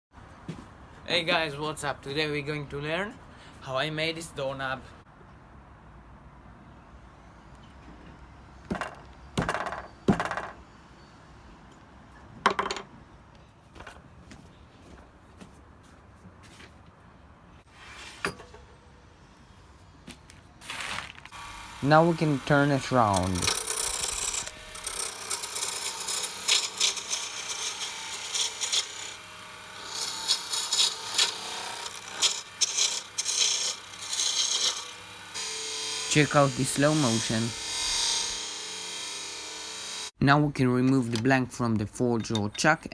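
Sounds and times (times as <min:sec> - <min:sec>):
wood and tools knocking: 0:08.7 - 0:10.6, 0:12.4 - 0:12.9
lathe tool scraping wood: 0:21.4 - 0:40.1.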